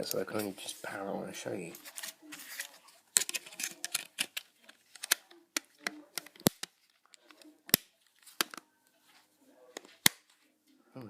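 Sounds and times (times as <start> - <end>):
phone parts clicking and rustling: 2.6 - 8.6
sharp plastic snaps: 3.1 - 8.6, 9.8 - 10.3.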